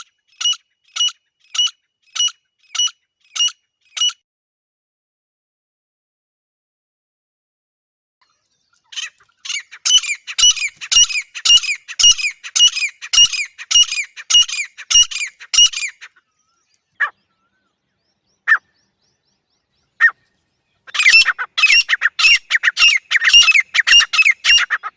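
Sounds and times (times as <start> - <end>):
francolin calling: 8.4 - 24.9.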